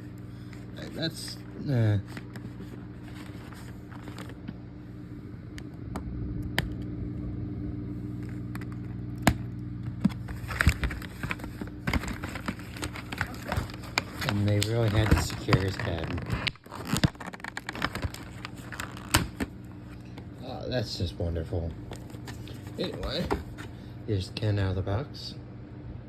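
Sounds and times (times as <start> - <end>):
steady low hum: 0.0 - 26.0
packaging clicks and crinkles: 0.4 - 4.6, 8.2 - 20.2.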